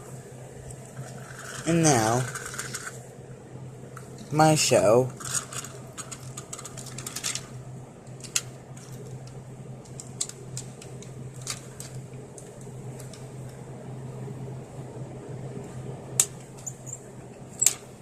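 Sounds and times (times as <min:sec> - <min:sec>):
steady low hum: 0:00.0 - 0:18.0
toy trains clicking: 0:01.0 - 0:03.0, 0:05.1 - 0:07.5.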